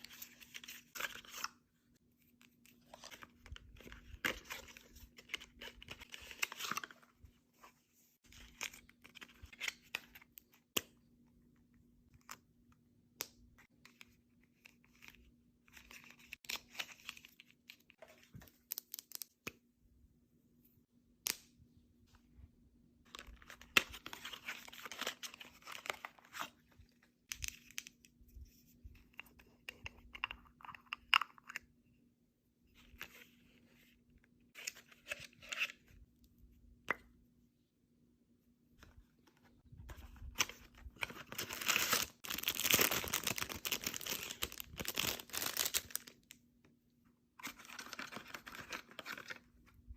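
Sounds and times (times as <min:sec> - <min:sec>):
packaging tearing and crinkling: 0:41.2 - 0:46.2.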